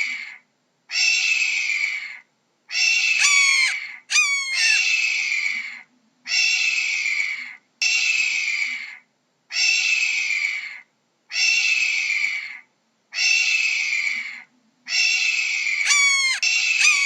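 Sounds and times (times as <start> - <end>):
sharp downward-sweeping bird calls: 2.8 - 5.0, 15.8 - 17.0
hawk screaming: 3.0 - 5.0, 15.8 - 17.0.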